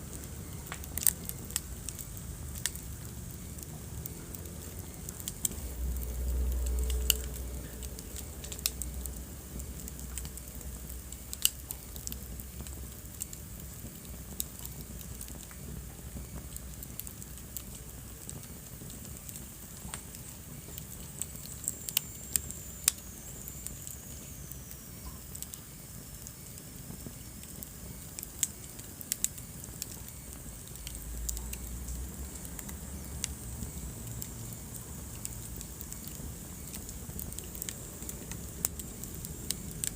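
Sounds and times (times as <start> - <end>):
fire crackles and pops: 0.0 - 39.9
wood fire rumbling: 0.0 - 39.9.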